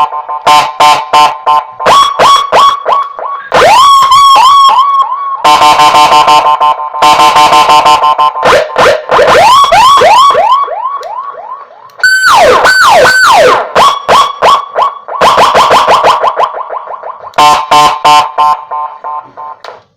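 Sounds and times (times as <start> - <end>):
electronic siren: 0.0 - 19.6.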